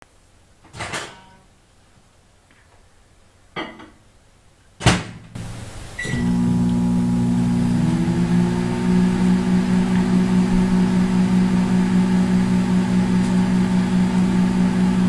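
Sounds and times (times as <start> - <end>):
microwave beep: 5.4 - 15.0
microwave oven humming: 5.4 - 15.0.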